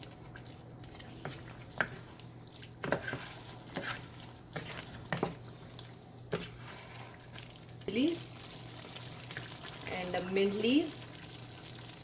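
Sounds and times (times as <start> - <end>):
curry sizzling in a pot: 0.0 - 12.0
spoon scraping against pot: 2.8 - 5.3.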